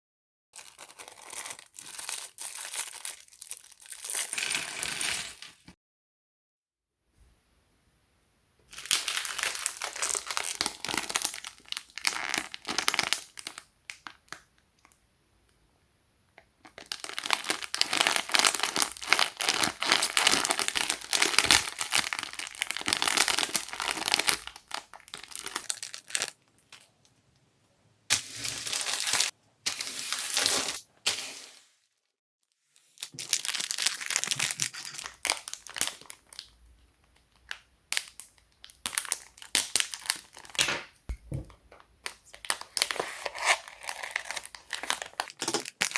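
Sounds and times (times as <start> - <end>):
plastic packaging crinkling and tearing: 0.6 - 5.6, 8.7 - 15.0, 16.6 - 26.9, 28.1 - 30.8, 32.8 - 36.6, 37.4 - 45.9.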